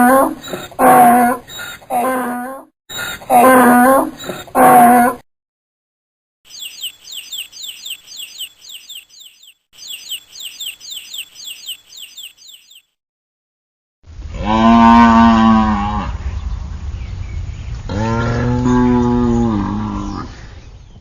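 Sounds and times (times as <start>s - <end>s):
rapid bird chirps: 1.5s - 1.8s, 2.9s - 3.2s, 6.5s - 13.0s
cow mooing: 14.4s - 16.2s, 17.9s - 20.3s.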